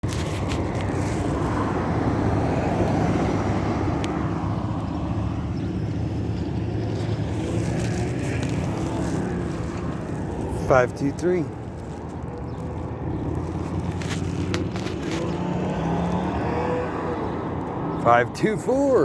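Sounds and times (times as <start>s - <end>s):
car engines: 0.0s - 19.0s
tyre noise: 5.5s - 17.2s.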